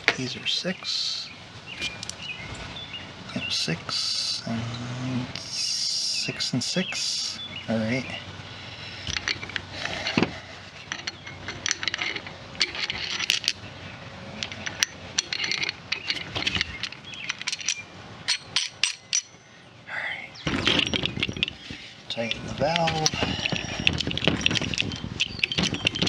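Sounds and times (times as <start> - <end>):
metal dies clicking and scraping: 9.0 - 13.6, 14.4 - 19.3, 20.5 - 26.0.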